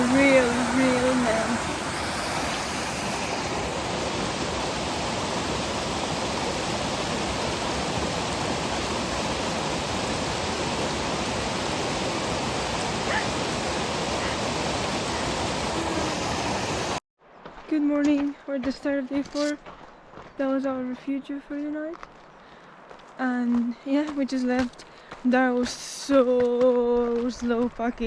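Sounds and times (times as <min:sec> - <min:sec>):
rushing mountain water: 0:00.0 - 0:17.6.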